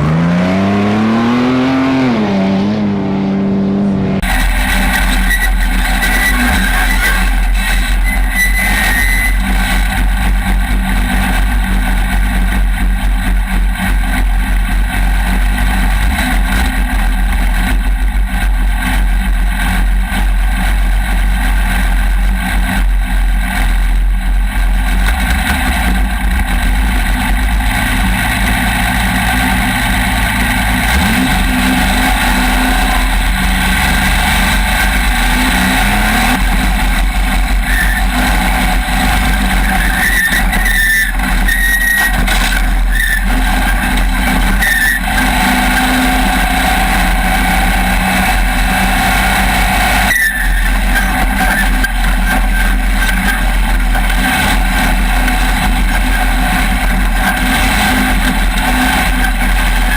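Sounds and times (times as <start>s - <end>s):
race vehicle engines revving: 0.0s - 59.9s.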